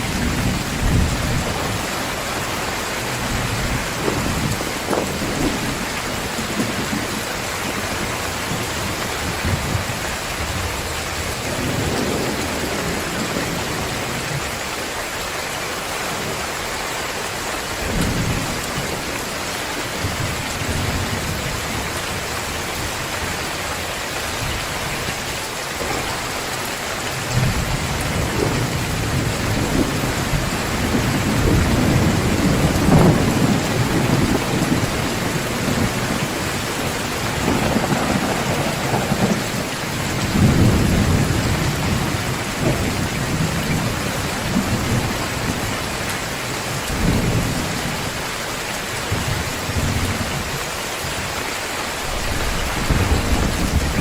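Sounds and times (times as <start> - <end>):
rolling thunder: 0.0 - 14.6, 27.2 - 46.1, 51.9 - 54.0
heavy rain falling: 0.0 - 54.0.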